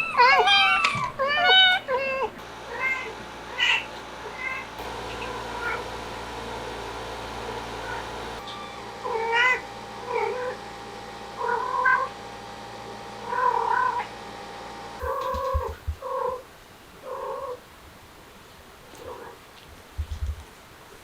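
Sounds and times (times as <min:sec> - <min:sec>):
cat meowing: 0:00.0 - 0:03.0.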